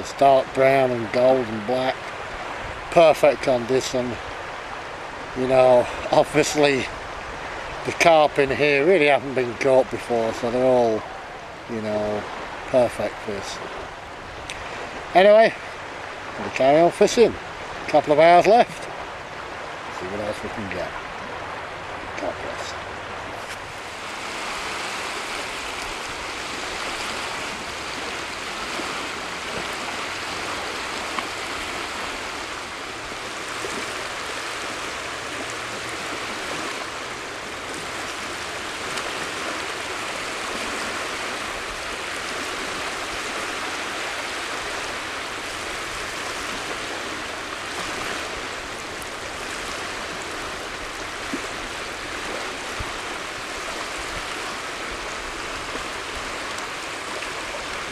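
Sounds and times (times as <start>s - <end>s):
small waves washing on shore: 0.0s - 57.9s.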